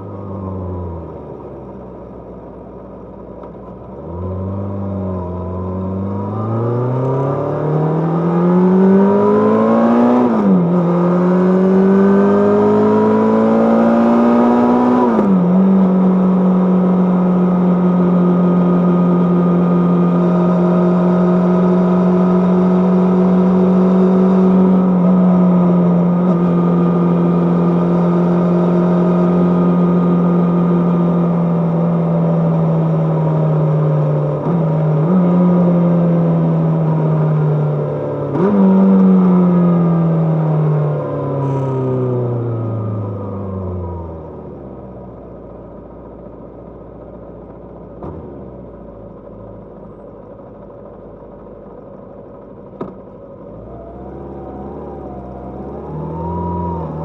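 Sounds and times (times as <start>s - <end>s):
motorcycle engine pulling away: 53.6s - 57.0s.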